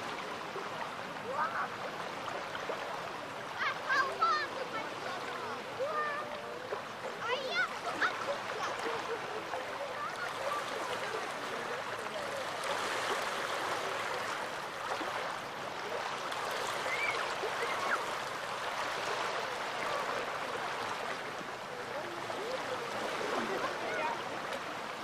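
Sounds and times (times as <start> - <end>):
small waves lapping on shore: 0.0 - 25.0.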